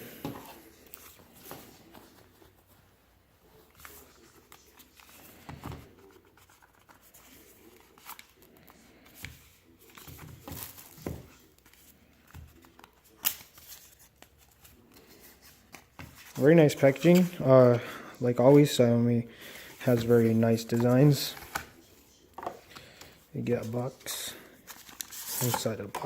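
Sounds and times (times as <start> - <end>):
packaging rustling: 19.5 - 26.0.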